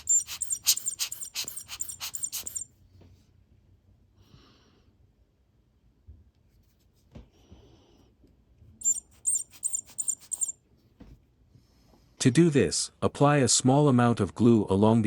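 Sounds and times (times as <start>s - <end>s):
high-pitched squeaky scrapes: 0.0s - 2.7s, 8.8s - 10.5s.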